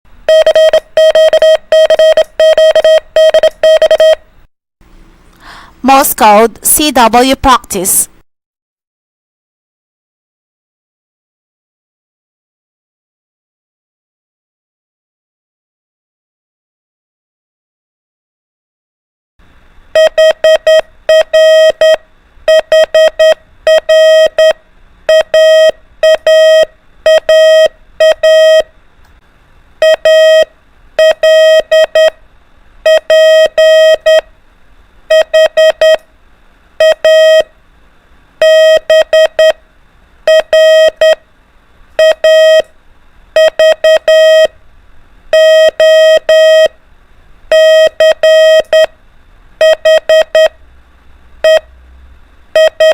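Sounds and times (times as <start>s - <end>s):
morse code beeps: 0.3s - 4.2s, 20.0s - 28.7s, 29.8s - 32.2s, 32.8s - 34.2s, 35.1s - 36.0s, 36.8s - 37.5s, 38.4s - 39.6s, 40.3s - 41.2s, 42.0s - 42.7s, 43.4s - 44.5s, 45.3s - 46.7s, 47.5s - 48.9s, 49.6s - 50.6s, 51.4s - 51.7s, 52.6s - 52.9s.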